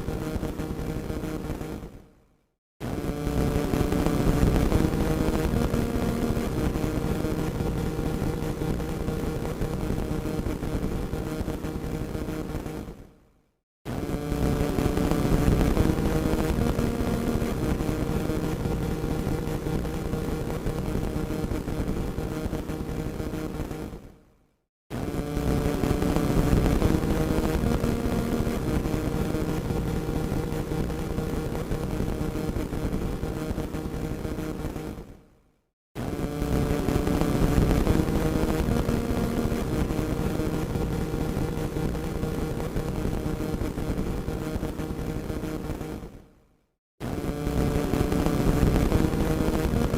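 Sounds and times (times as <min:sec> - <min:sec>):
radio static hiss and crackle: 0:00.0 - 0:02.0, 0:02.8 - 0:13.0, 0:13.9 - 0:24.0, 0:25.0 - 0:35.0, 0:36.0 - 0:46.1, 0:47.0 - 0:49.9
radio static crackling: 0:14.0 - 0:23.6, 0:36.1 - 0:46.0, 0:47.1 - 0:49.9.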